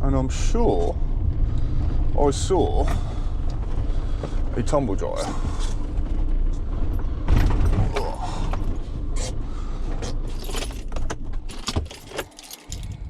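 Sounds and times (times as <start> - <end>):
van engine running: 0.0 - 13.0
keys jangling: 10.3 - 13.0.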